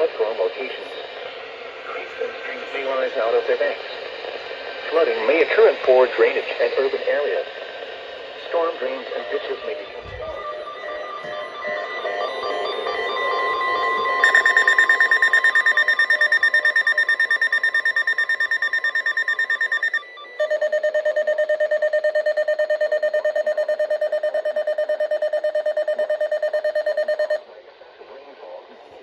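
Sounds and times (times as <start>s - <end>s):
fast pulsing alarm beeps: 8.6s - 27.4s.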